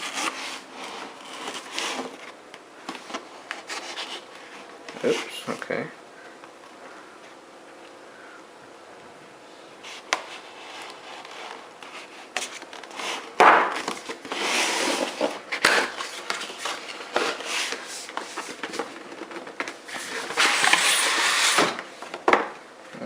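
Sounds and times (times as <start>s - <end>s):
cardboard box rustling and scraping: 0.0s - 2.4s, 3.0s - 5.4s, 9.9s - 21.8s.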